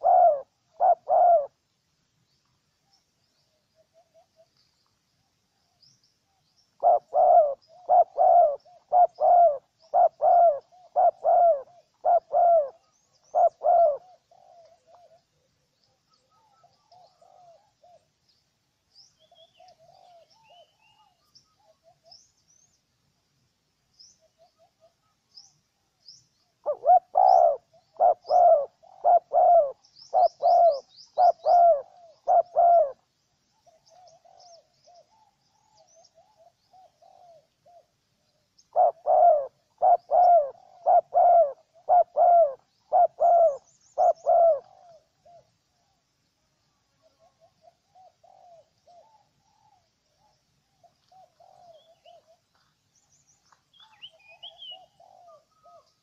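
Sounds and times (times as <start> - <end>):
dove cooing: 0.0 - 1.6, 6.7 - 18.2, 19.3 - 22.2, 26.6 - 46.0, 46.8 - 52.6, 53.8 - 56.0
small birds chirping: 23.8 - 56.0.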